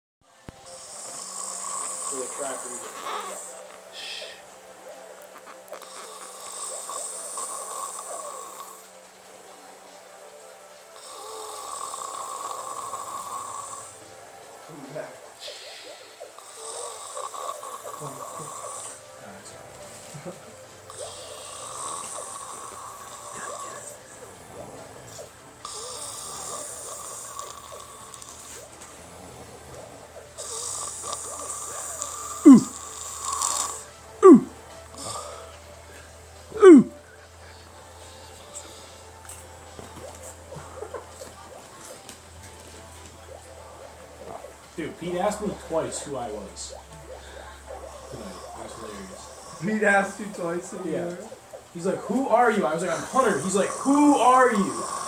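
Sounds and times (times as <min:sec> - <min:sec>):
man snoring hissily: 0:00.6 - 0:04.5, 0:05.8 - 0:09.0, 0:11.0 - 0:14.1, 0:15.4 - 0:19.4, 0:20.9 - 0:29.8, 0:30.4 - 0:35.6, 0:36.5 - 0:37.0, 0:47.4 - 0:50.3, 0:52.9 - 0:55.0
loud short snorts: 0:30.4 - 0:35.2, 0:36.6 - 0:37.0.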